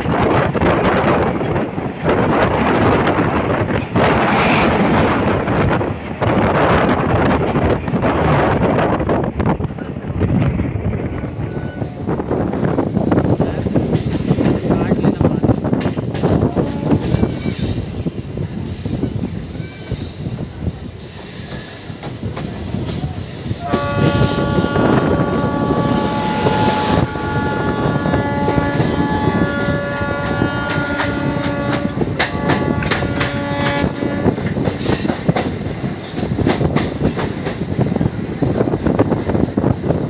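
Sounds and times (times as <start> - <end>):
train wheels clattering over rails: 0.0 - 9.6, 10.3 - 40.0
locomotive multi-tone horn: 16.4 - 17.4, 23.6 - 34.5.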